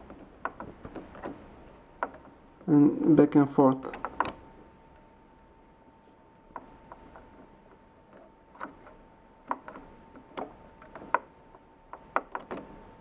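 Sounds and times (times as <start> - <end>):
printer mechanism clicks and knocks: 0.0 - 1.4, 2.0 - 2.4, 3.9 - 4.4, 8.1 - 11.3, 11.9 - 12.8
faint steady whine: 0.0 - 13.0.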